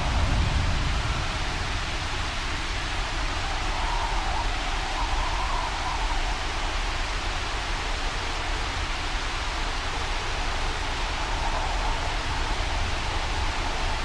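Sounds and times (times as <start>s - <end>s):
rain: 0.0s - 14.0s
rushing wind: 0.0s - 14.0s.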